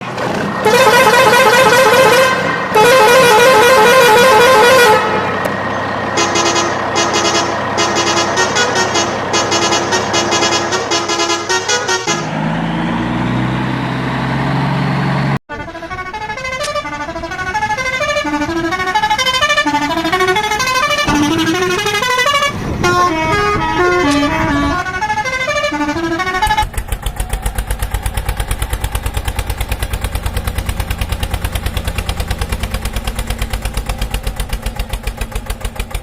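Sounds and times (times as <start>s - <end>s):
warbling horn-like electronic tone: 0.6s - 5.4s, 6.2s - 12.3s, 15.5s - 26.8s
bouncing tune of beeping notes: 18.4s - 25.0s.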